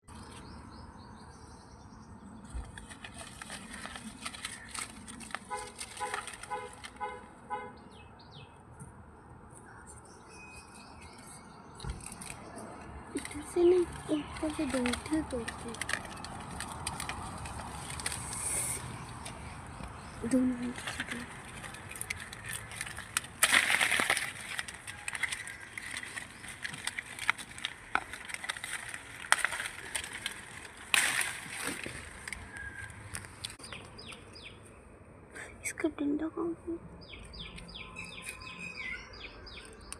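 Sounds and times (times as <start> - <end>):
clicks and rustling: 2.5 - 7.2, 11.8 - 34.3
birds calling: 9.6 - 23.3, 37.0 - 39.9.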